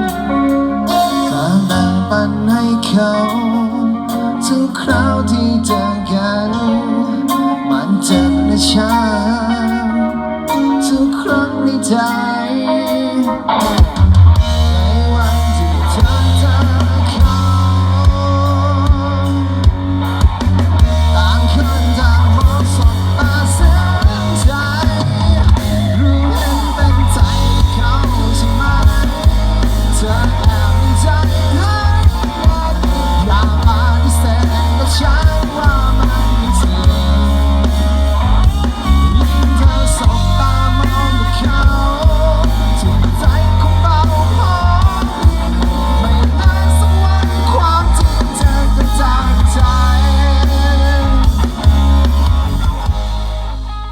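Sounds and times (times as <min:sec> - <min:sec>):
drum kit: 0:00.0 - 0:02.6, 0:13.5 - 0:53.9
person singing: 0:00.0 - 0:53.0
bass guitar: 0:00.0 - 0:53.9
electric guitar: 0:00.0 - 0:53.9
keyboard: 0:00.0 - 0:53.9.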